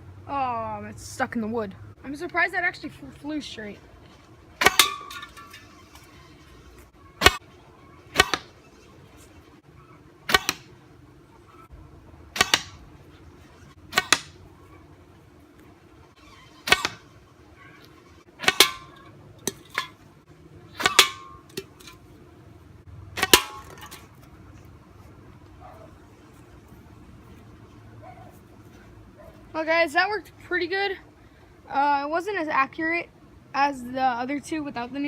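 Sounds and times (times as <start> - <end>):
blow dart pops: 7.2 - 7.5, 8.1 - 8.6, 10.3 - 10.7, 12.4 - 12.8, 13.9 - 14.4, 16.6 - 17.1, 18.4 - 18.9.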